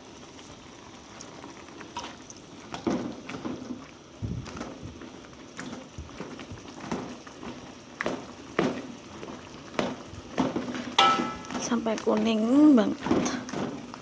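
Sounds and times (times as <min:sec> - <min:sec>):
low sizzle: 0:00.0 - 0:14.0
spatula stirring and scraping pan: 0:05.6 - 0:11.8
spatula knocking against pan: 0:11.0 - 0:11.6.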